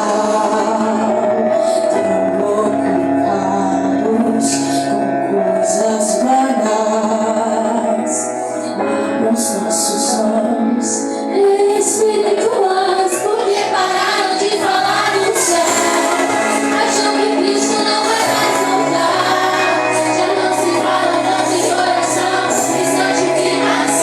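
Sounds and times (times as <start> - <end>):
woman singing: 0.0 - 24.0
instrumental accompaniment: 11.3 - 24.0.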